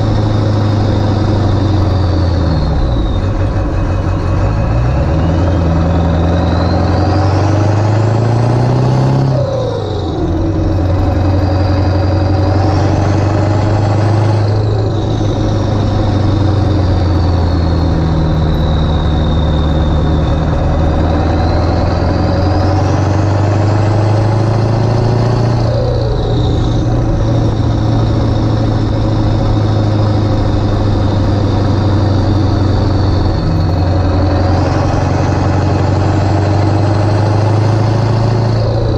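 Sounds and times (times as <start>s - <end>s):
turbo whistle: 0.0s - 7.5s, 14.6s - 23.0s, 25.0s - 36.1s
diesel engine accelerating: 0.0s - 38.9s.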